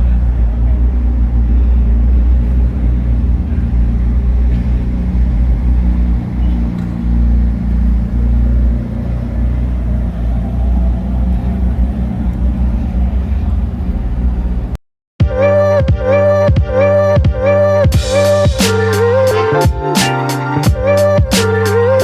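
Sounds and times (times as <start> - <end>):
car low rumble: 0.0 - 22.0
faint rising whine: 0.1 - 14.8.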